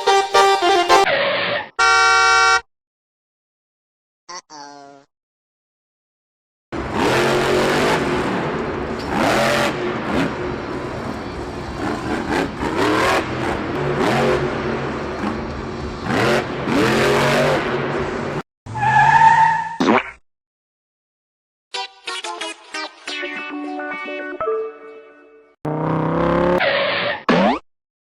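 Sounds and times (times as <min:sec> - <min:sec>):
car engine revving: 0:06.8 - 0:18.4, 0:25.7 - 0:26.6.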